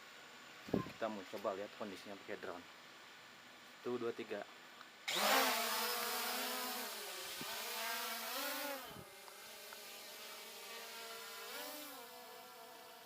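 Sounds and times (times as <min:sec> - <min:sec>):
drone rotor motors whining: 0:05.1 - 0:13.0.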